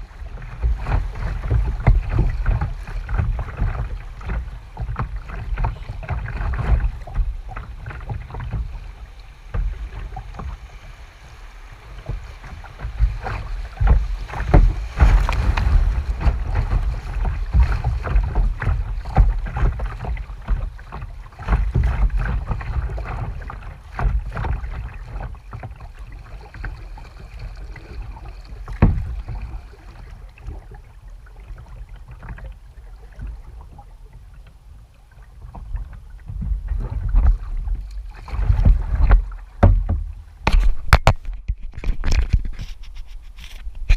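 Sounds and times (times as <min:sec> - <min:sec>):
paddle splashing in water: 0:00.0 - 0:43.9
sharp knocks and clicks: 0:28.7 - 0:29.4, 0:36.3 - 0:43.9.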